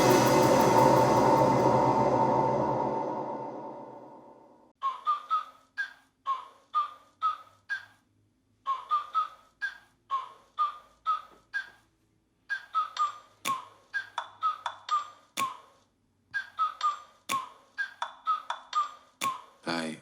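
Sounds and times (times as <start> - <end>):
deep bass hit: 0.0 - 4.5.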